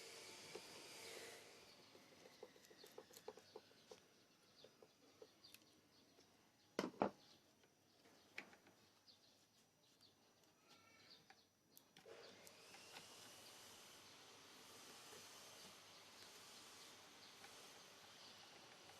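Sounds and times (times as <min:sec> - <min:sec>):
small motor whine and hiss: 0:00.0 - 0:05.6, 0:10.4 - 0:18.9.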